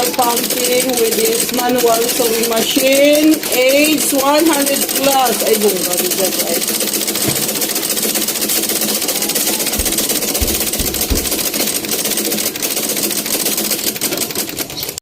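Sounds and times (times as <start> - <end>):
treadle sewing machine clattering: 0.0 - 15.0
low thumps: 9.8 - 11.8.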